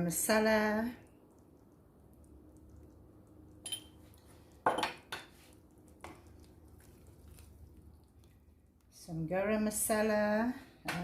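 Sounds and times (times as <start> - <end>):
metal utensil clinking on pot: 3.6 - 4.0.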